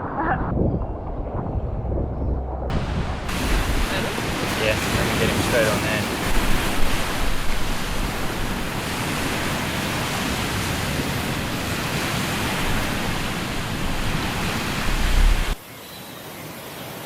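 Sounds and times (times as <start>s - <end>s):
wind rumble on microphone: 0.0s - 15.6s
surf rushing: 2.7s - 15.6s.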